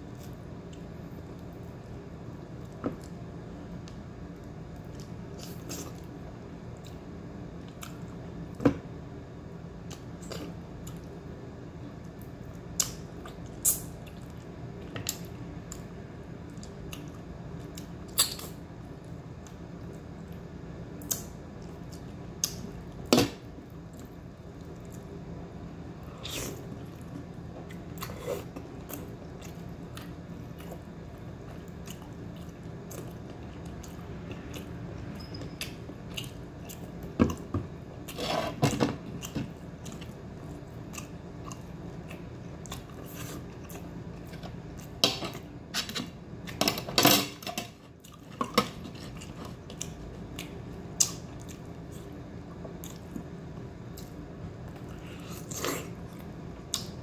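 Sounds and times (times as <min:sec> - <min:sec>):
person chewing food: 0:26.0 - 0:34.8, 0:35.6 - 0:45.5, 0:47.9 - 0:57.0.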